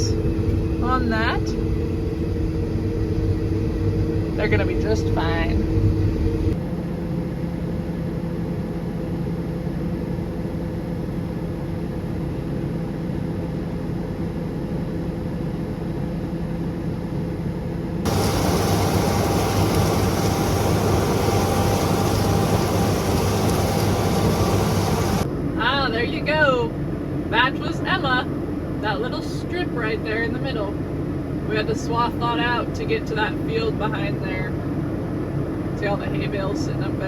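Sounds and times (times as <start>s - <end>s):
combine harvester engine hum: 0.0s - 37.0s
harsh machine noise: 18.1s - 25.3s.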